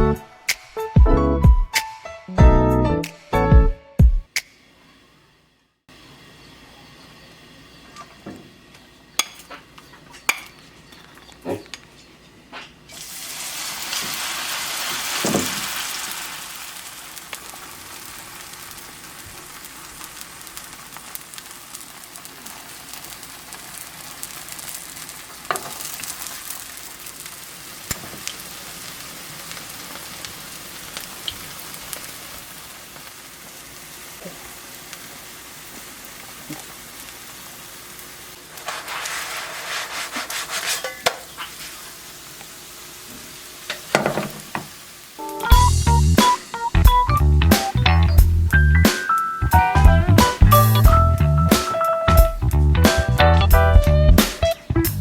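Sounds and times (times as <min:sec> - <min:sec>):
batter sizzling in hot oil: 0:12.9 - 0:52.5.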